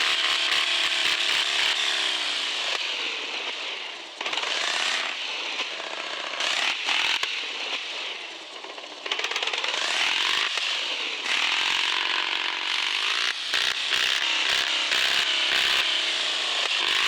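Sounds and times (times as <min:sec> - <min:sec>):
toy car electric motor whining: 0:00.0 - 0:07.7, 0:11.2 - 0:17.0.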